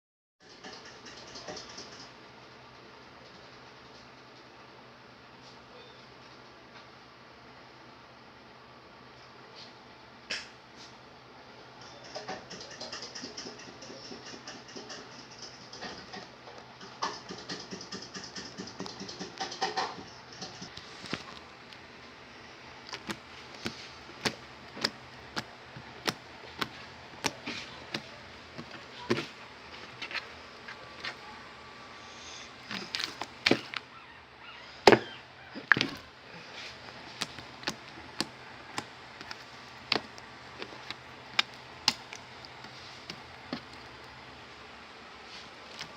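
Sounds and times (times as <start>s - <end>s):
slime squishing: 17.4s - 34.0s, 34.8s - 44.3s.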